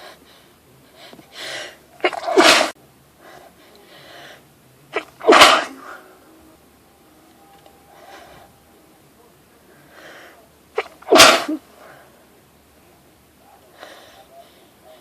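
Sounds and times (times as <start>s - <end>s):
woman sneezing: 2.0s - 2.8s, 4.9s - 6.0s, 10.8s - 11.6s
catch of breath: 13.7s - 14.3s.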